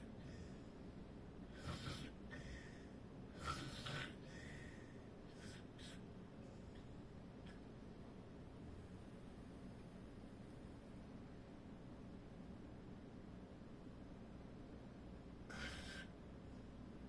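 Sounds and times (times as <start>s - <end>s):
faint snoring: 1.5s - 6.0s, 15.5s - 16.2s.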